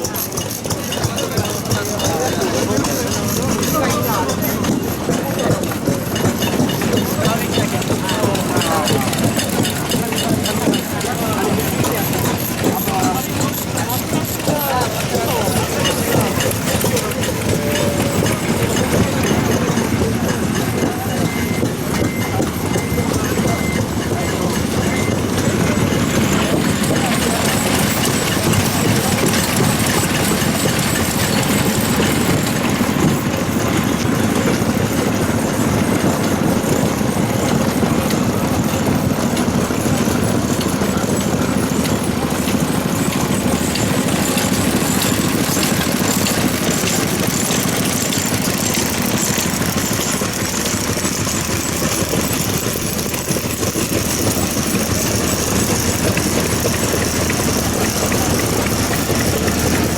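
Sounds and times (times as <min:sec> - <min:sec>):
stationary engines running: 0:00.0 - 0:59.9.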